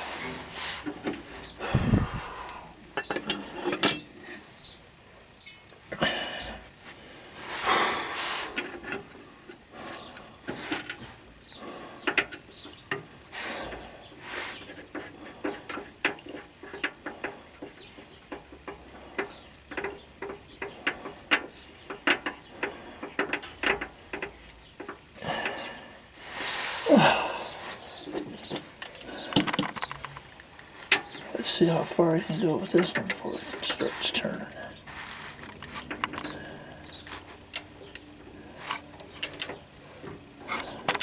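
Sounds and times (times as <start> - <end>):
handling rustle: 32.8 - 37.7.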